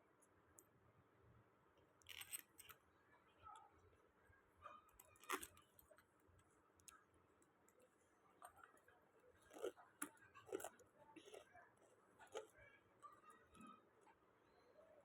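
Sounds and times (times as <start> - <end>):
small metal parts clicking: 2.0 - 2.8.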